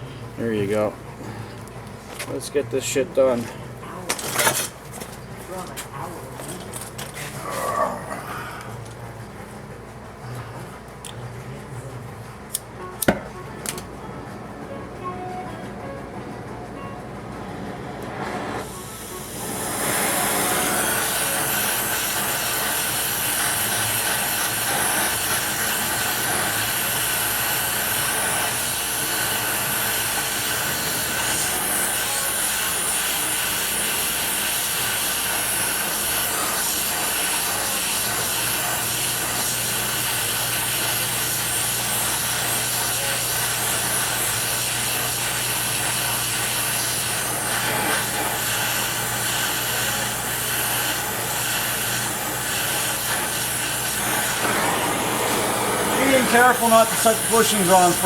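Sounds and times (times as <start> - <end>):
gas torch flame hissing: 18.0 - 58.0.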